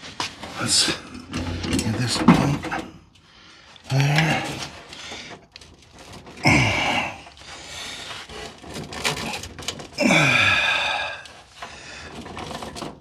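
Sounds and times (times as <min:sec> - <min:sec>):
man grunting with effort: 0:06.4 - 0:07.3, 0:10.0 - 0:11.2.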